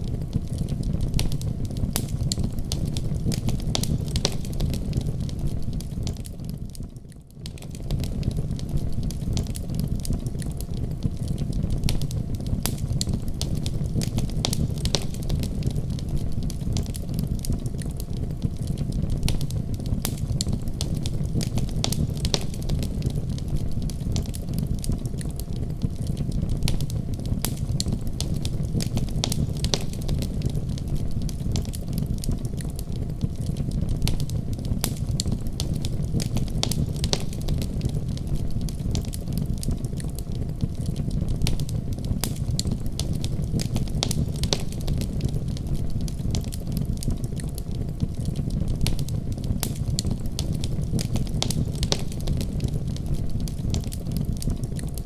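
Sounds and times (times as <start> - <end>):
wood fire crackling: 0.0 - 55.0.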